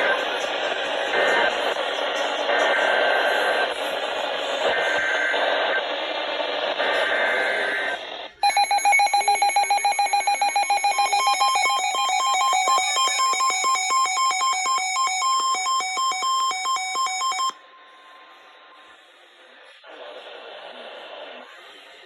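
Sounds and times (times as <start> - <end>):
rapid electronic alarm beeping: 4.7 - 5.9, 6.8 - 17.6.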